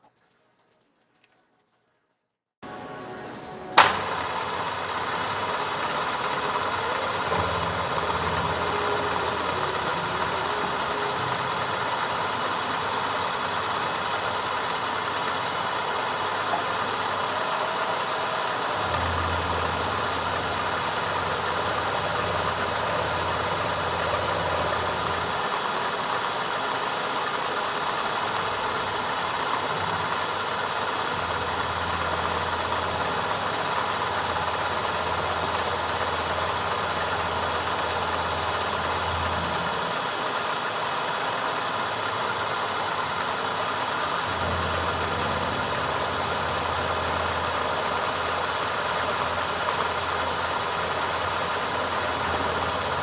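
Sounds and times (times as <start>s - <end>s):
machine whirring hiss: 3.0s - 28.3s, 44.3s - 53.0s.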